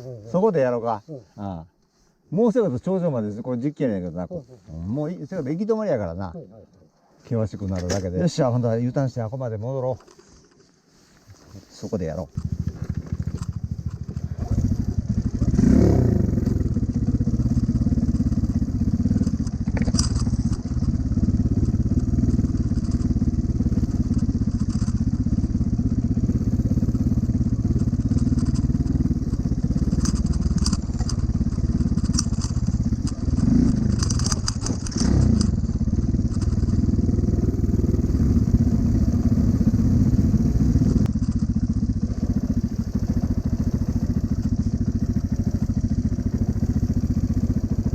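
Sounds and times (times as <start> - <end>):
motorcycle engine running: 11.8 - 47.9
stones crackling under tyres: 27.8 - 37.1.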